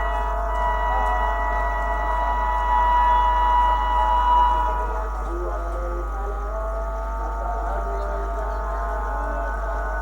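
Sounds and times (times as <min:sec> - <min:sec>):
locomotive air horn blast: 0:00.0 - 0:05.1.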